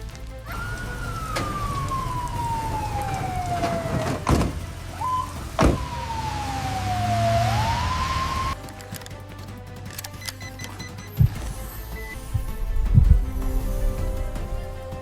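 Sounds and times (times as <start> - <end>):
sharp crack: 0.0 - 9.2
falling whistling tone: 0.5 - 4.2, 4.9 - 8.6
low rumble: 12.2 - 15.0.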